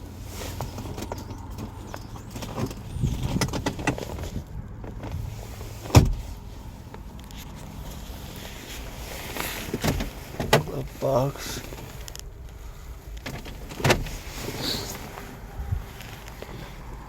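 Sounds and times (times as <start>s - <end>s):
low steady rumble: 0.0s - 17.0s
clicks and knocks from car doors: 0.6s - 5.2s, 5.8s - 6.3s, 9.6s - 10.9s, 13.1s - 14.3s.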